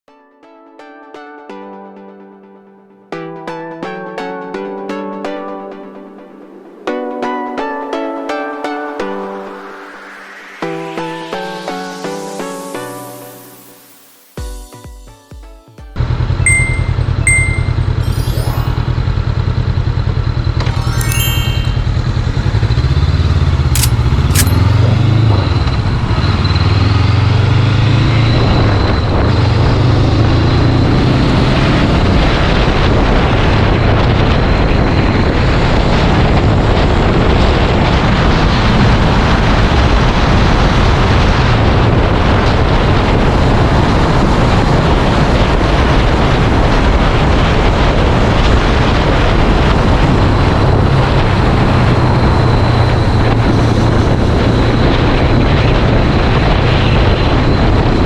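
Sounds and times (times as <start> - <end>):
motorcycle engine accelerating: 16.0 - 20.8, 21.7 - 58.0
wind noise on microphone: 23.7 - 58.0
sharp clicks: 23.8 - 24.8.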